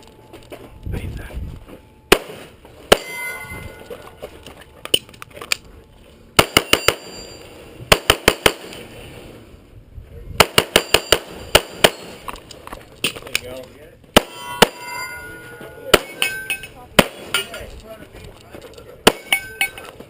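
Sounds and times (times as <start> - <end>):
pistol shots: 2.1 - 3.2, 6.4 - 7.2, 7.9 - 8.8, 10.4 - 12.2, 14.1 - 14.8, 15.9 - 16.4, 17.0 - 17.5, 19.1 - 19.5
metallic ringing: 2.9 - 4.4, 6.6 - 7.6, 14.2 - 17.7, 19.1 - 19.9.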